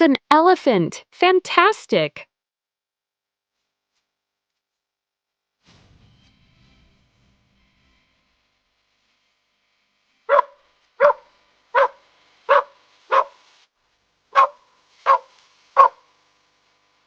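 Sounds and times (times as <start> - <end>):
dog barking: 10.3 - 11.2, 11.8 - 13.4, 14.4 - 16.0.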